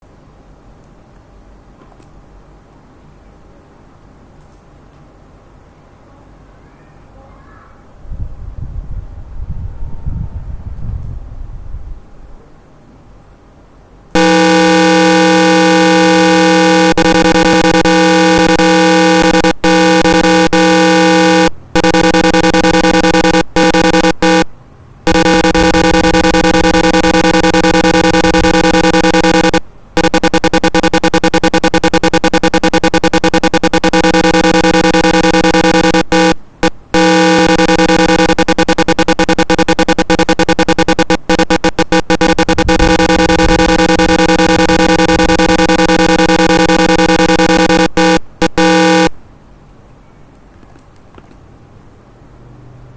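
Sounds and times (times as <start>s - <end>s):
harsh electronic alarm buzz: 14.1s - 49.2s.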